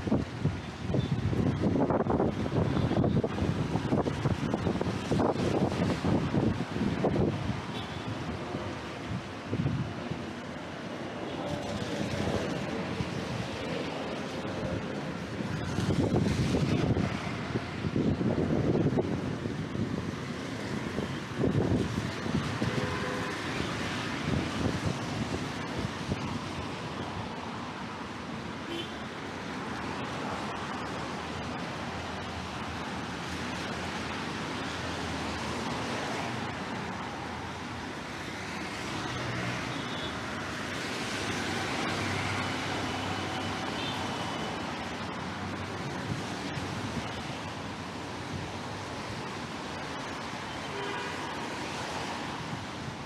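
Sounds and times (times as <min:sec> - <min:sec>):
wind buffeting microphone: 0:00.0 - 0:27.5
road traffic: 0:00.0 - 0:53.0.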